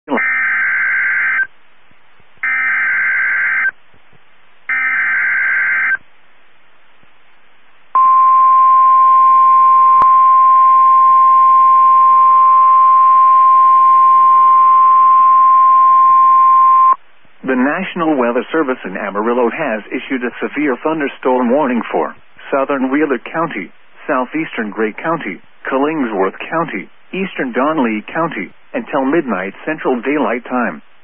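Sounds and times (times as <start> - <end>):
steady alarm tone: 2.4 - 3.7, 4.7 - 6.0.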